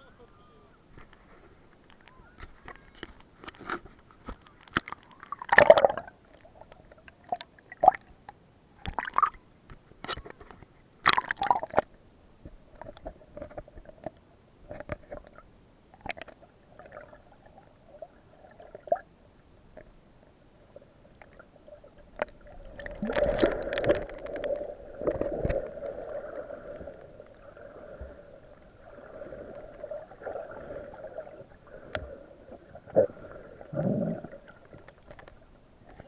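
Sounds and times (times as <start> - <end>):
muffled underwater gurgling: 22.4 - 34.7.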